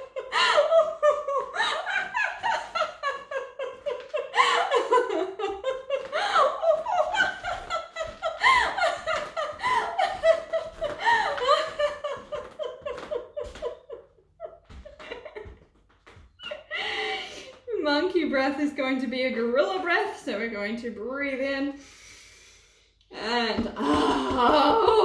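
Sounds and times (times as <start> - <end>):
woman laughing: 0.0 - 15.7, 23.2 - 25.0.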